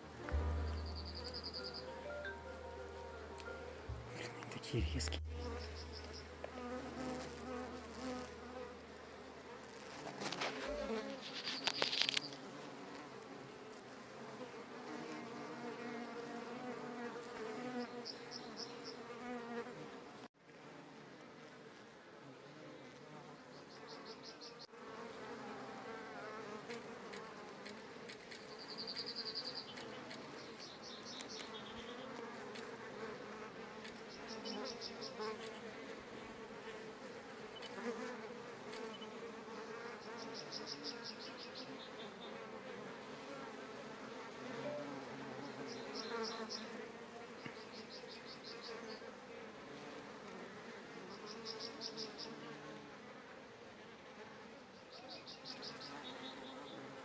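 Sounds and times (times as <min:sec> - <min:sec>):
insects buzzing: 0:00.0 - 0:20.1, 0:23.1 - 0:57.0
high pulsing trills: 0:00.1 - 0:06.4.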